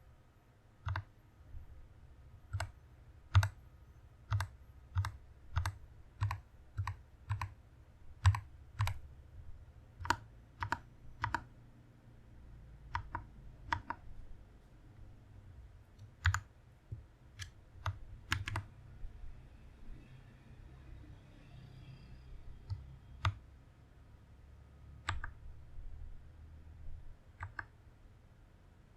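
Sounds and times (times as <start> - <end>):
mechanical keyboard keystrokes: 0.9 - 1.1, 2.5 - 3.6, 4.3 - 7.5, 8.2 - 9.0, 10.0 - 11.5, 12.9 - 14.0, 16.0 - 16.5, 17.4 - 18.7, 25.0 - 25.4.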